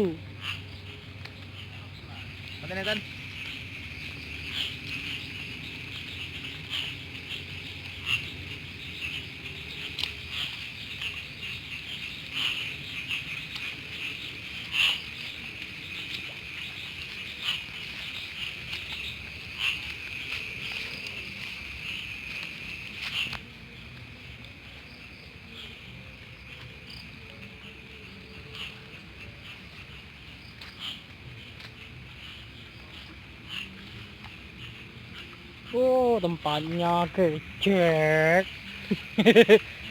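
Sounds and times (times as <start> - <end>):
crickets trilling: 0.0 - 39.9.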